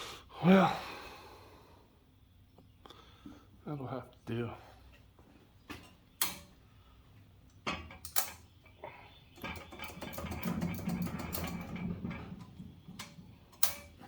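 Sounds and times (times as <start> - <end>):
hand tool clicking on metal: 6.2 - 6.5, 8.0 - 8.5, 12.4 - 14.0.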